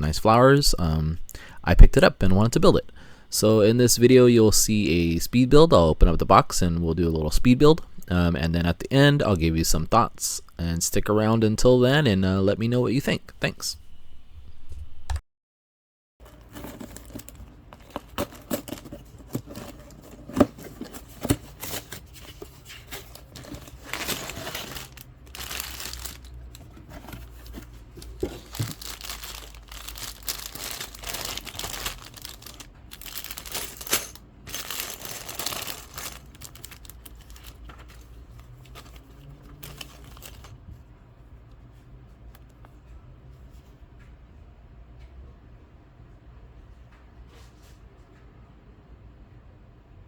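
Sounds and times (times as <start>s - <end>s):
plastic bags crinkling: 16.2s - 40.6s
cardboard box tearing: 23.0s - 37.6s.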